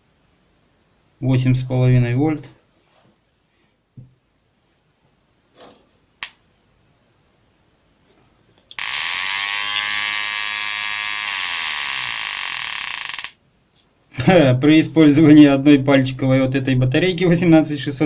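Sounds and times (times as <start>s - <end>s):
buzzy electronic siren tone: 8.8s - 13.3s.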